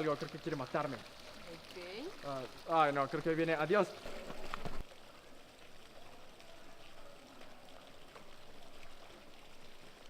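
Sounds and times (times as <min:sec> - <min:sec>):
faint running water: 0:00.0 - 0:10.0.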